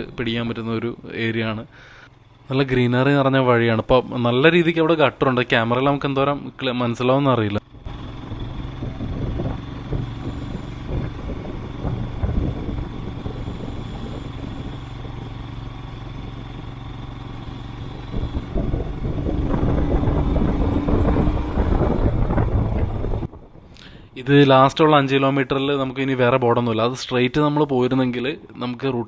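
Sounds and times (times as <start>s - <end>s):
motorcycle engine running: 0.0s - 24.2s
knocks and rattles: 7.8s - 23.8s.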